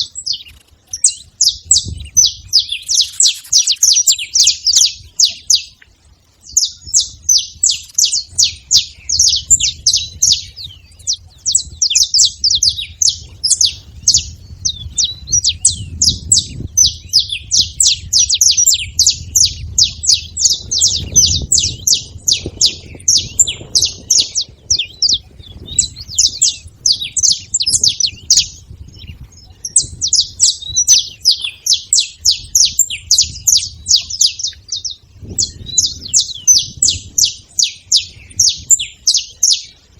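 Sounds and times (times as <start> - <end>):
finches chirping and singing: 0.0 - 39.9.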